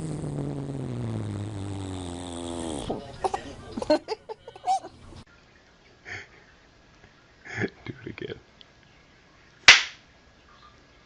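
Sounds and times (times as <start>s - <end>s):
long low fart: 0.0s - 3.2s.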